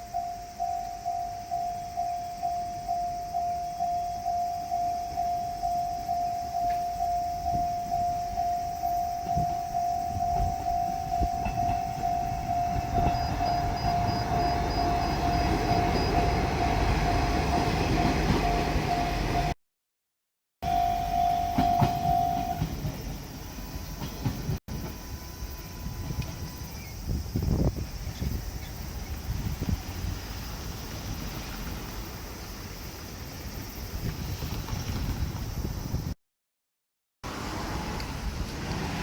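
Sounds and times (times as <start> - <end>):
diesel railcar rumbling: 0.0 - 19.6, 20.6 - 36.2, 37.2 - 39.0
level crossing warning bell: 0.0 - 19.6, 20.6 - 26.7.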